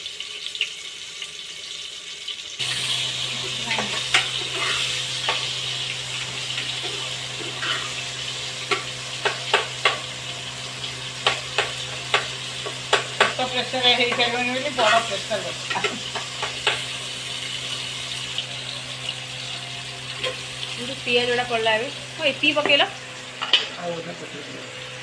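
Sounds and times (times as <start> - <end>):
spices sizzling in oil: 0.0 - 25.0
spatula knocking against pan: 8.7 - 10.1, 11.2 - 13.4, 15.7 - 16.9.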